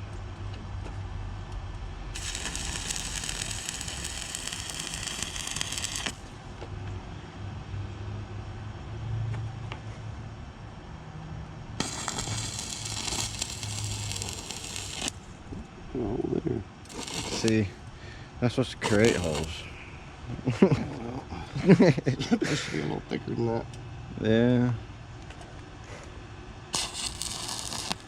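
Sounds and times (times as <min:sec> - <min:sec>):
arc welder crackling: 0:02.1 - 0:06.4, 0:11.8 - 0:15.4, 0:16.8 - 0:18.0, 0:18.6 - 0:19.8, 0:26.7 - 0:28.0.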